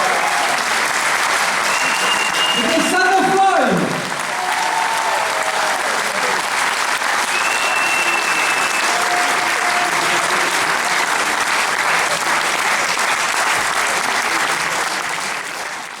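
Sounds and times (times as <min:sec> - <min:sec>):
audience applauding: 0:00.0 - 0:16.0.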